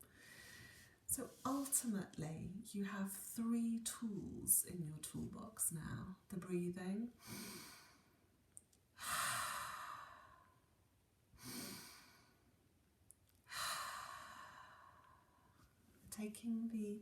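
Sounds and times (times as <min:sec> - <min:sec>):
woman breathing deeply: 0:00.0 - 0:01.1, 0:07.2 - 0:08.3, 0:09.0 - 0:10.7, 0:11.4 - 0:12.5, 0:13.5 - 0:15.6.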